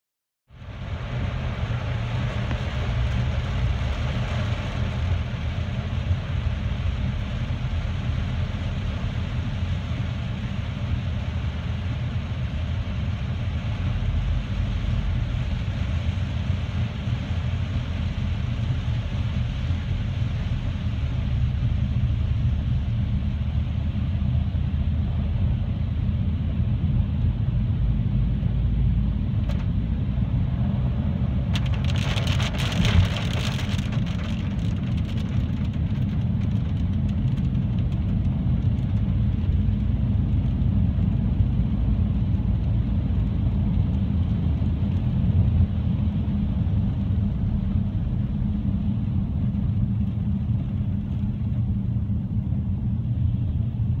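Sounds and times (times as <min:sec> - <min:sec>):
car engine rumble: 0:00.6 - 0:54.0
tyre and road noise: 0:29.2 - 0:48.8.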